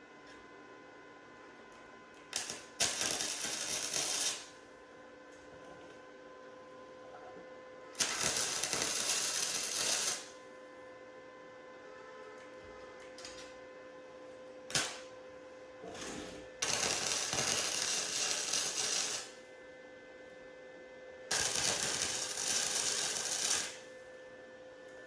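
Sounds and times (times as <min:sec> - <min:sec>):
welding arc crackling: 0:02.4 - 0:04.5, 0:08.0 - 0:10.3, 0:14.7 - 0:15.1, 0:16.6 - 0:19.4, 0:21.3 - 0:23.8.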